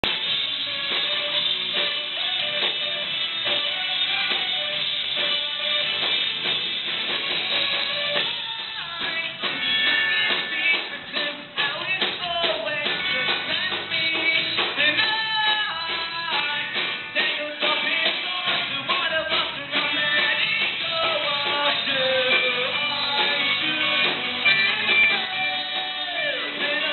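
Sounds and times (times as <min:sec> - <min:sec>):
rock band playing: 0:00.0 - 0:26.9
person singing: 0:01.8 - 0:04.4, 0:08.1 - 0:26.9.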